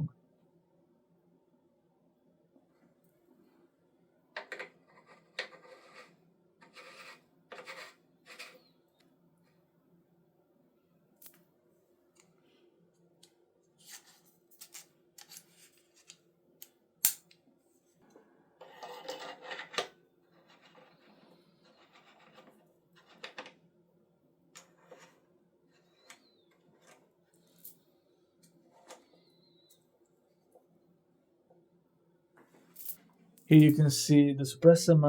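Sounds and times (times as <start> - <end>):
parts scraping: 4.4 - 8.6.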